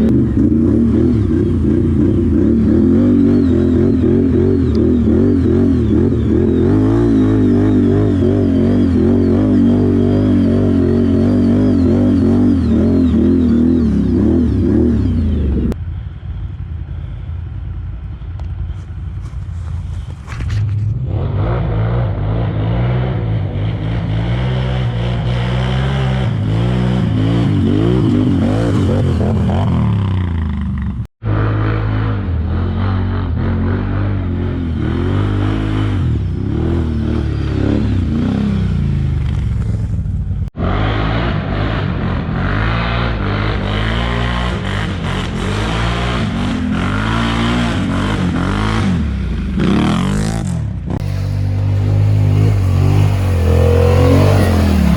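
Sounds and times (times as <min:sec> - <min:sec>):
atv engines revving: 0:00.0 - 0:16.7, 0:17.5 - 0:54.9.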